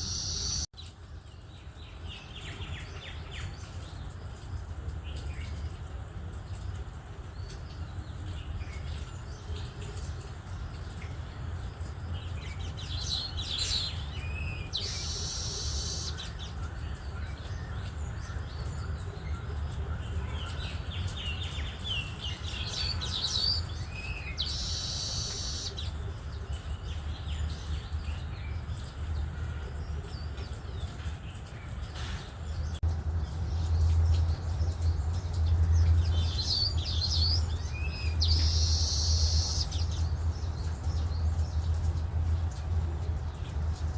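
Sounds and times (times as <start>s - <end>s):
wheezy chattering bird song: 0.0s - 0.7s, 11.6s - 42.6s
birds chirping and chattering: 0.0s - 43.9s.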